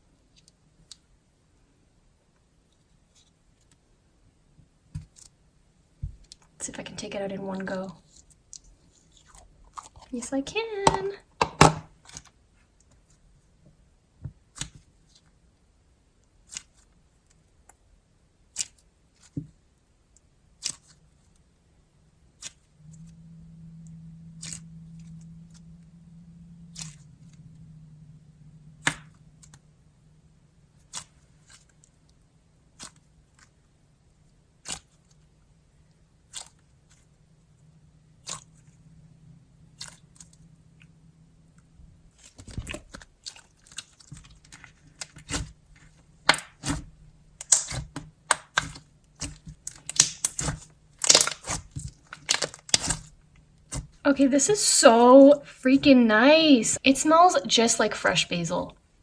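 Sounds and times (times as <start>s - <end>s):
slime squished by hand: 42.1s - 54.0s
slime clicking pops: 47.4s - 53.0s.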